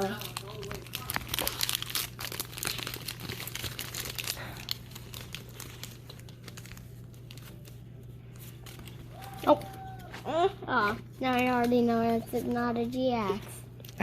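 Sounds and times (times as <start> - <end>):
foil wrapper crinkling and tearing: 0.0 - 10.2.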